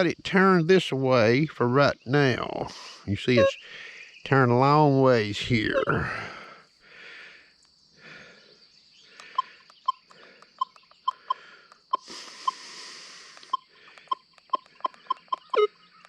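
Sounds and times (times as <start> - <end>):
metal detector beeps: 3.4 - 3.6, 5.6 - 6.0, 9.3 - 12.6, 13.4 - 16.0
soft breathy hiss: 11.4 - 14.0.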